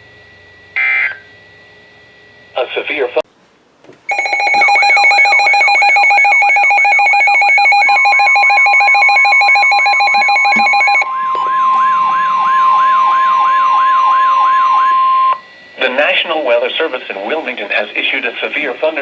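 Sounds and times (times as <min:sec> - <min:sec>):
steady high tone: 0:04.1 - 0:19.0
downward sweeping siren tone: 0:08.0 - 0:15.9
pulsing electronic buzz: 0:10.7 - 0:16.2.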